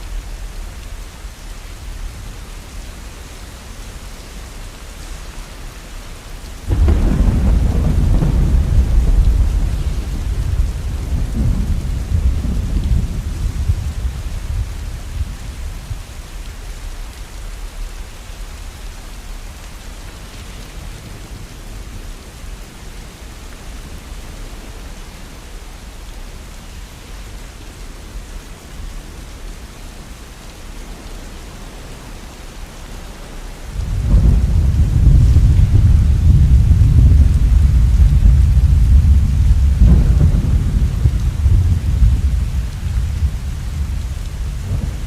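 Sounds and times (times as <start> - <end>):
steady rain: 0.0 - 45.0
thunder rumbling: 6.7 - 16.1, 33.8 - 45.0.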